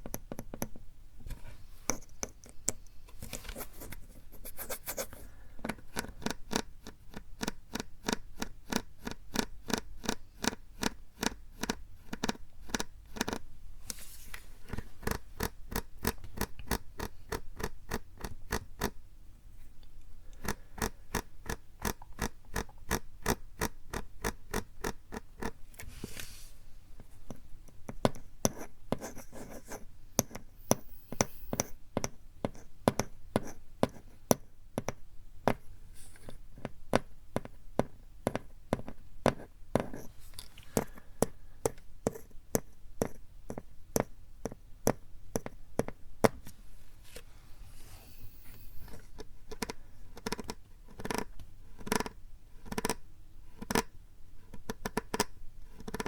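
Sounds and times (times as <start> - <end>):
fingertips tapping plastic bottle: 48.9 - 53.0, 54.5 - 56.0.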